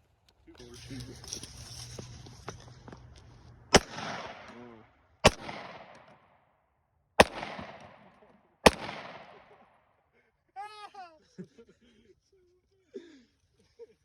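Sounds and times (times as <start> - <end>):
gunshots with echo: 3.7 - 6.4, 7.2 - 9.8.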